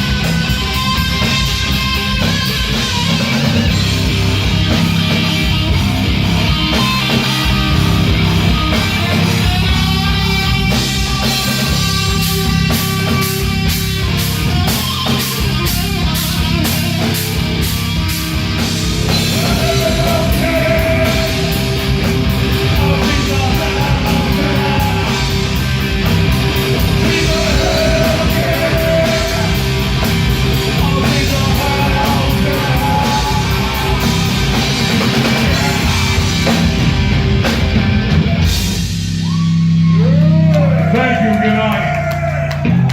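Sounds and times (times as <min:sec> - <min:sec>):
rock band playing live: 0:00.0 - 0:42.9
person singing: 0:19.1 - 0:21.8, 0:22.7 - 0:25.6, 0:27.0 - 0:29.7, 0:30.7 - 0:34.2.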